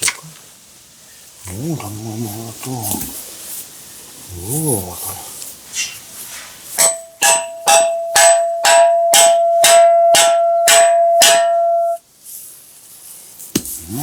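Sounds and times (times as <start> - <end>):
hammer striking metal ringing: 6.8 - 12.0.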